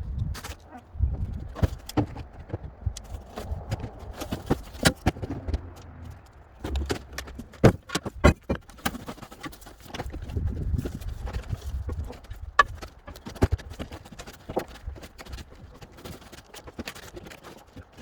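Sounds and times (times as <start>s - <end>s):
wood knocking and cracking: 0.2s - 18.0s
plywood thuds: 6.6s - 9.3s.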